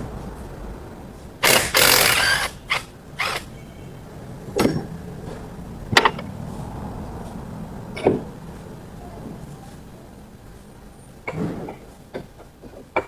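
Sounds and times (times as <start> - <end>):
loud rushing tool bursts: 1.4 - 3.5.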